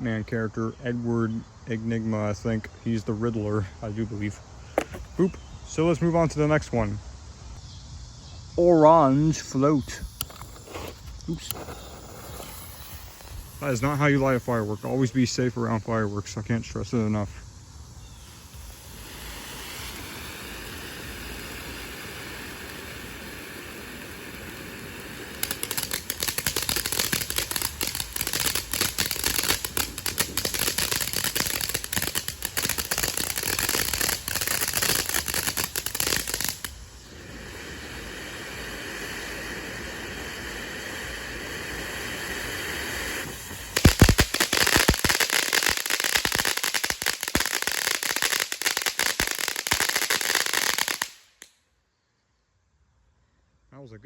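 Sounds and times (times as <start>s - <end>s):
firework hissing: 4.4s - 5.7s, 8.7s - 51.5s
firework crackling: 9.1s - 51.6s.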